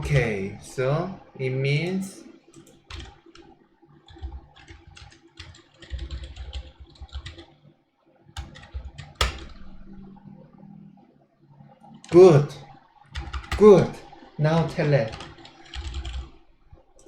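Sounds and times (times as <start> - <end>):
typing on computer keyboard: 1.9 - 3.5, 4.1 - 7.5, 8.4 - 10.2, 13.2 - 17.0.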